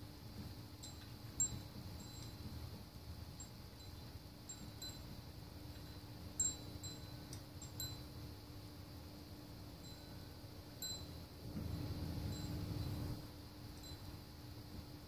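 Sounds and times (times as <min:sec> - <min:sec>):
steady low hum: 0:00.0 - 0:15.0
small chimes tinkling: 0:00.8 - 0:02.5, 0:03.4 - 0:08.2, 0:09.8 - 0:13.2, 0:13.8 - 0:14.2.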